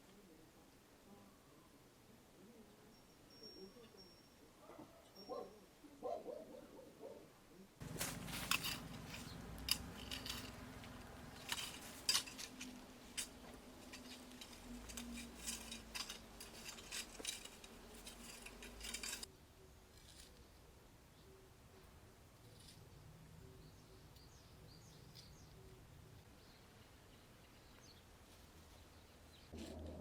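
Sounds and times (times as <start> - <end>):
low steady hum: 7.8 - 19.3.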